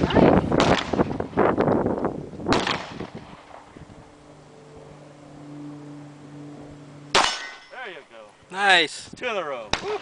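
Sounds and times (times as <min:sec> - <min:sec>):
pistol shot: 0:00.6 - 0:01.0, 0:02.5 - 0:03.2, 0:07.1 - 0:07.7, 0:09.7 - 0:10.0.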